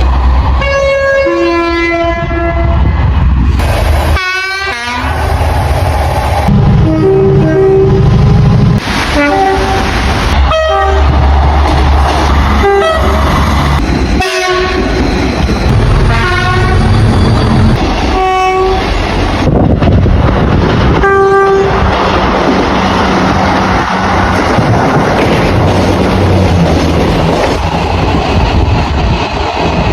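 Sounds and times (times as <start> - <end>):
passing train rumble: 0.0 - 29.9
train horn short blasts: 16.1 - 16.8, 18.2 - 18.8, 21.0 - 21.8.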